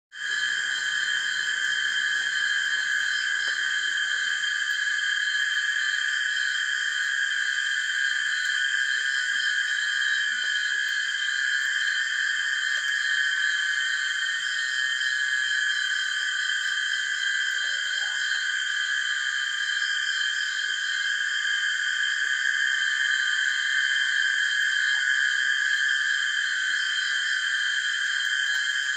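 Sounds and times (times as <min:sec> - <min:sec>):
crickets chirping: 0:00.2 - 0:28.9.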